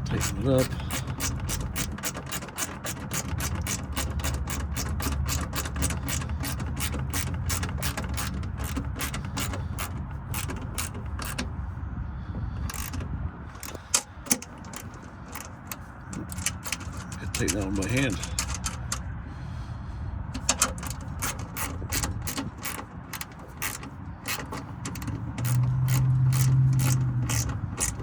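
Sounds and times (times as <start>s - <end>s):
hand ratchet clicking: 0.0s - 11.5s, 12.6s - 19.0s, 20.4s - 28.0s
low steady rumble: 0.0s - 28.0s.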